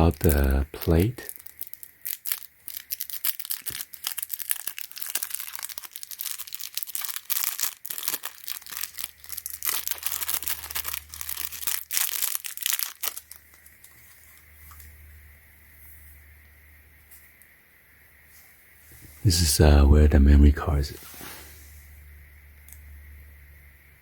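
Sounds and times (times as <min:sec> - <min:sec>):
plastic packaging crinkling: 0:00.0 - 0:15.0.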